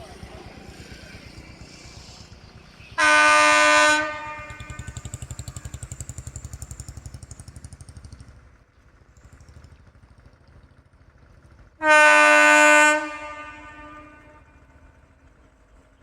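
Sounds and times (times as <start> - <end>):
rolling train rumble: 0.0 - 16.0
locomotive horn blast: 2.9 - 5.5, 11.8 - 14.8.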